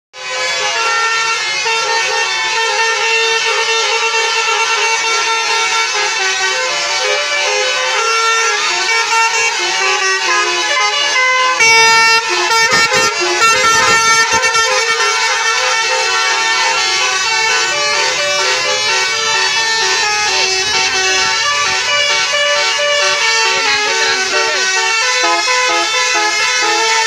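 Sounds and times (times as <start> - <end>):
multi-tone air horns playing tune: 0.2 - 27.0
low rumble: 17.2 - 24.7.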